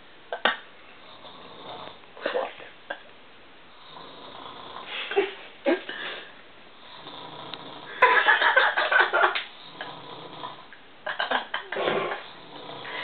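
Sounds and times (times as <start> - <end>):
woman snoring: 1.0 - 2.4, 3.8 - 5.2, 6.8 - 8.1, 9.5 - 10.7, 11.8 - 13.0.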